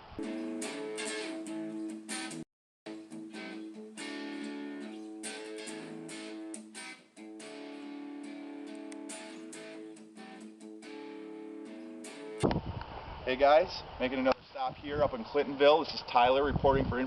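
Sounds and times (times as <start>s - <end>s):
strummed guitar music: 0.2s - 12.4s.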